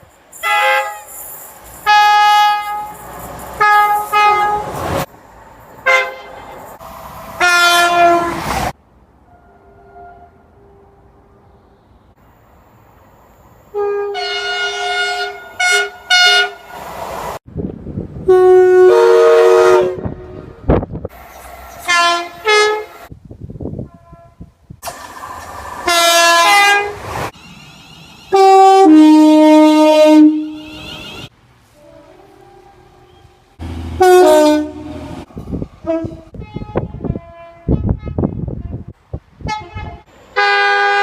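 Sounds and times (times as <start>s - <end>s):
train horn: 0.4s - 1.2s, 1.8s - 3.0s, 3.6s - 4.9s, 5.8s - 6.4s, 7.4s - 8.6s, 9.2s - 11.9s, 13.7s - 16.7s, 18.3s - 20.7s, 21.8s - 23.1s, 23.8s - 24.5s, 25.8s - 27.1s, 28.3s - 41.0s.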